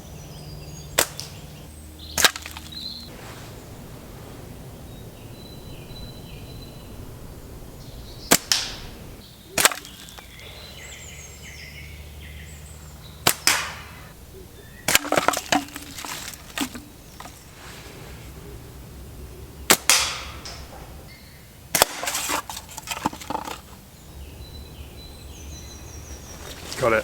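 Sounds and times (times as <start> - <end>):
faint bird chirps: 0.0 - 21.7, 23.8 - 27.0
slingshot snaps: 1.0 - 1.4, 8.3 - 8.9, 9.6 - 10.3, 13.2 - 14.0
short rush: 3.1 - 9.2.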